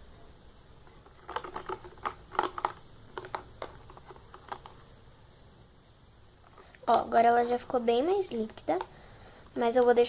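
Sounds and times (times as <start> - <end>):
glue being stirred in container: 1.0 - 4.8.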